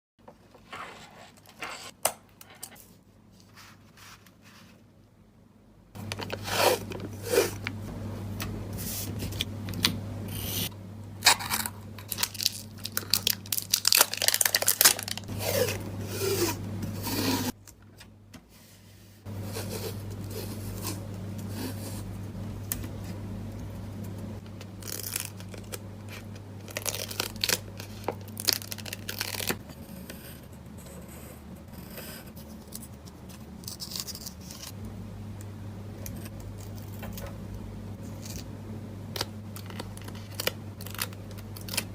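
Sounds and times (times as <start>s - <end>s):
steady low hum: 0.3s - 41.9s
paper and tape rustling and tearing: 11.2s - 17.6s, 24.8s - 29.6s.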